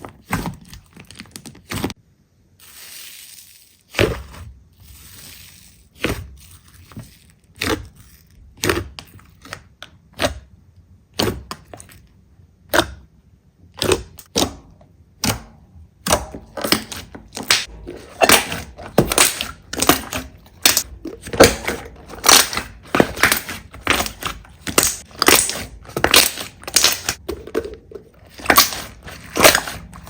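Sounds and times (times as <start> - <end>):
slime crackling and popping: 22.2 - 27.2.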